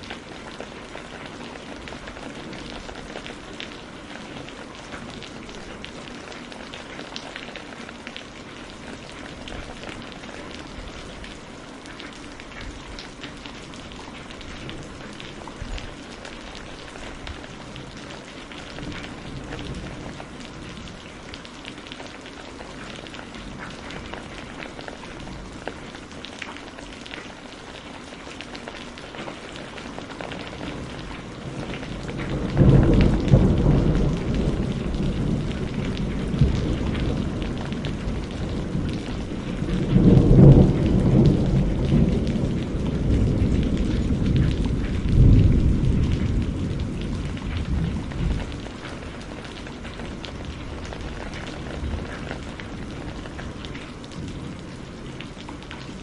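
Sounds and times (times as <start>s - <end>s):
steady rain pattering: 0.0s - 56.0s
thunder rumbling: 12.5s - 25.9s, 29.4s - 56.0s.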